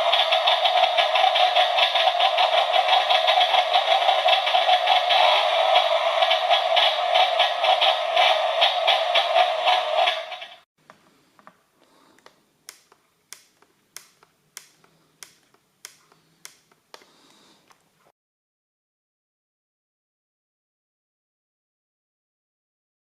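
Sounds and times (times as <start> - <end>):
simulated two-stroke engine drone: 0.0 - 10.6.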